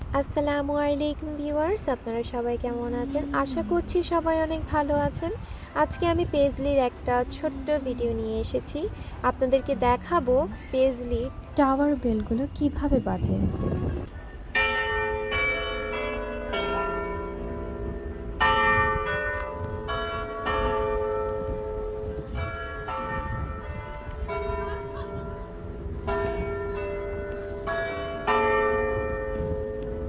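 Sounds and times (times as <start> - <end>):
clock tower bells chiming: 14.6 - 30.0.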